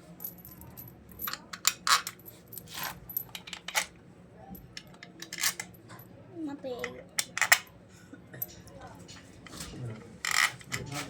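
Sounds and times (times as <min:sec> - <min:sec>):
metal nuts and spanner clinking: 0:04.8 - 0:05.8, 0:10.2 - 0:10.8.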